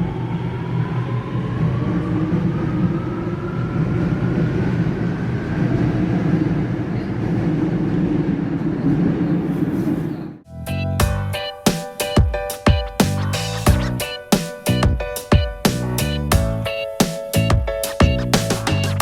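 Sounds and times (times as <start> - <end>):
train rumble inside car: 0.0 - 10.4.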